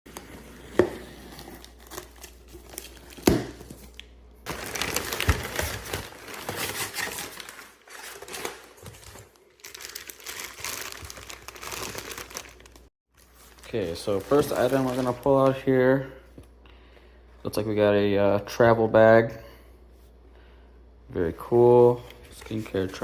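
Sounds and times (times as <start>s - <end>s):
packaging crinkling and tearing: 1.3s - 15.6s.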